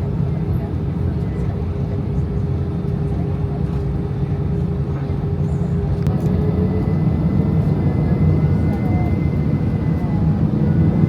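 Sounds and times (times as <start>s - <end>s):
jet engine rumble in cabin: 0.0s - 11.0s.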